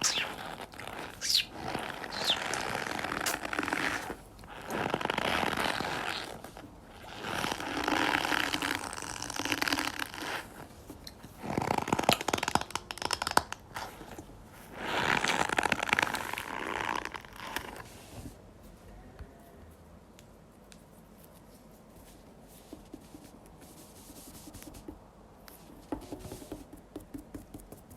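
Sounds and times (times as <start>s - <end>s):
slime squelching: 0.0s - 10.7s.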